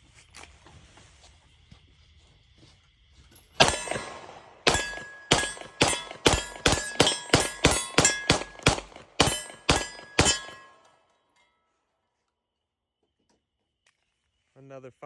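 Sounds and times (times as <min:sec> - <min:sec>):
pistol shots: 0:03.6 - 0:10.8
steel target ringing: 0:03.6 - 0:11.1.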